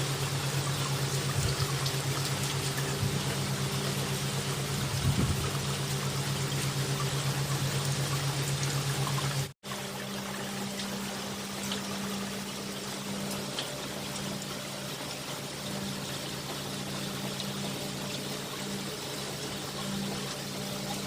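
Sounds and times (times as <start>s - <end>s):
heavy rain pouring: 0.0s - 9.5s
low hum: 0.0s - 21.0s.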